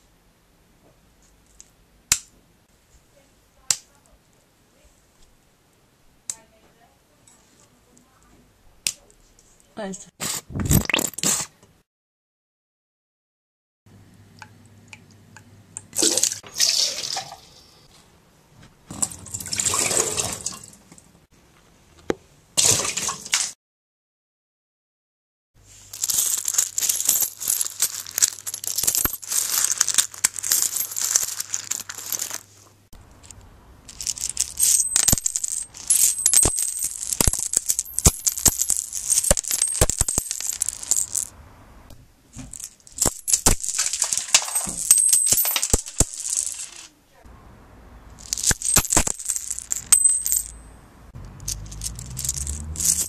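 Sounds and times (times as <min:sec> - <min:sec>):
rattling and jingling with clicks: 0:33.1 - 0:41.3, 0:42.5 - 0:46.8, 0:48.2 - 0:53.0.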